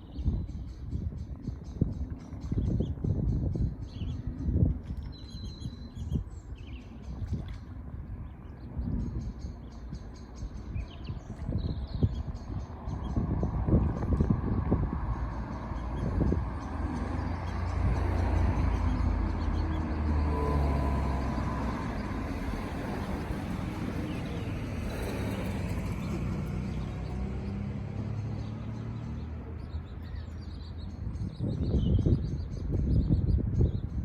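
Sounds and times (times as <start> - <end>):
low engine rumble: 5.9 - 31.2
low bumps: 12.8 - 28.9.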